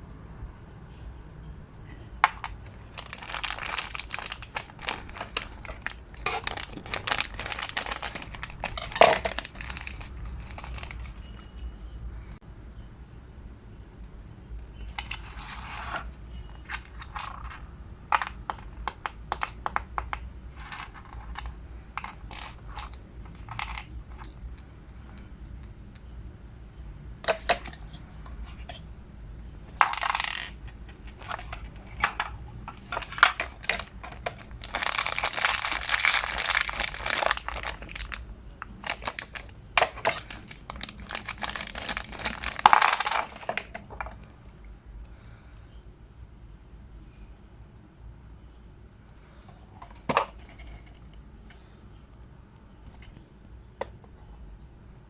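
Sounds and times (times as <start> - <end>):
wrapper tearing and crinkling: 2.7 - 11.2, 32.8 - 38.2, 38.8 - 43.7.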